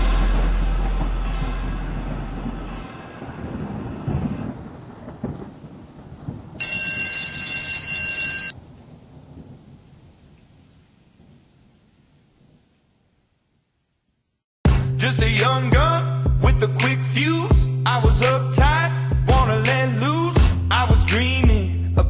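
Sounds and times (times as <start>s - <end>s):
low thunder rumbles: 0.0s - 6.9s, 8.6s - 13.3s
rain: 0.0s - 7.4s, 8.5s - 14.2s
electronic school bell tone: 6.6s - 8.6s.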